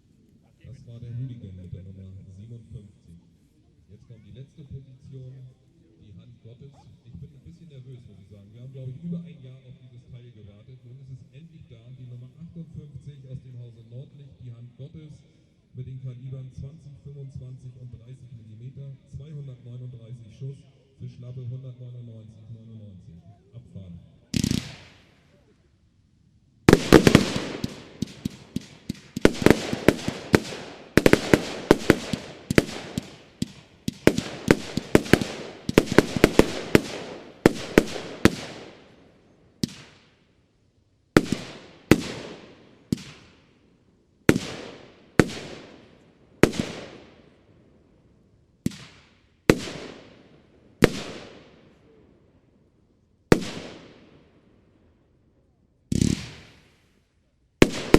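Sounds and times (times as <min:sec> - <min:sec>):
firework battery bangs echoing: 0:24.4 - 0:25.2, 0:26.7 - 0:39.0, 0:39.6 - 0:40.2, 0:41.2 - 0:43.5, 0:44.3 - 0:47.2, 0:55.9 - 0:56.7.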